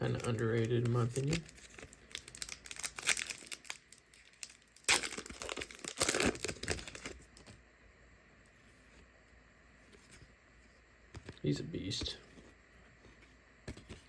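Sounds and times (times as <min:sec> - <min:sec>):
card packaging crinkling: 0:00.0 - 0:07.6.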